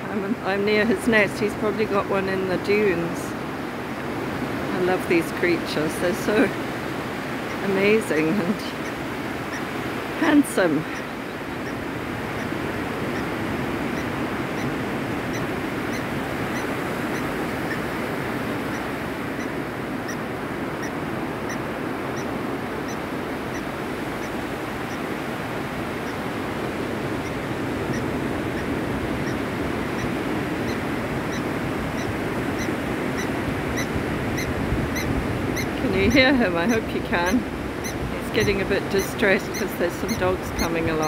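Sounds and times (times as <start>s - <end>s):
surf washing: 0.0s - 41.0s
lapwing metallic tink calls: 10.5s - 20.2s, 28.6s - 41.0s.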